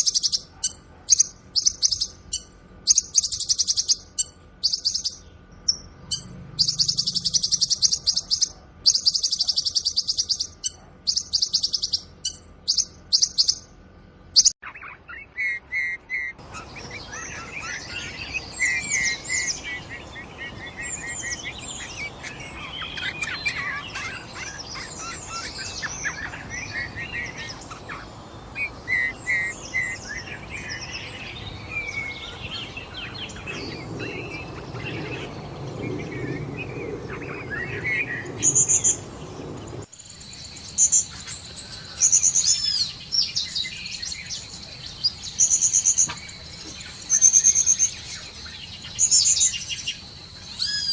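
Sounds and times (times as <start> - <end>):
loud high-pitched bird calls: 0.0 - 50.9
songbirds chirping: 0.0 - 50.9.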